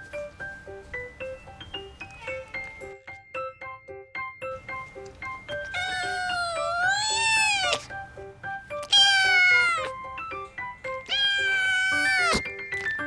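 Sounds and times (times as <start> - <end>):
kitten meowing: 2.0 - 2.8, 5.0 - 8.0, 8.8 - 10.0, 11.0 - 12.4.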